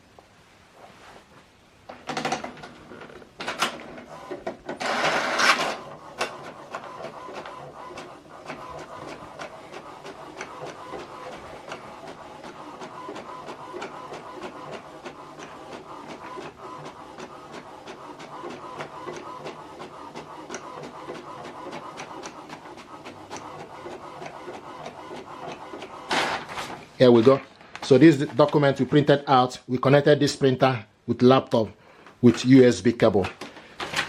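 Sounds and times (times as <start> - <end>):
inkjet printer printing: 3.4 - 27.0, 28.0 - 29.2.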